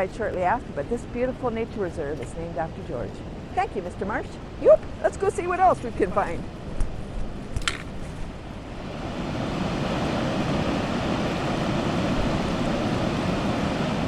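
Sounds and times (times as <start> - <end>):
waterfall rushing: 8.6 - 14.0.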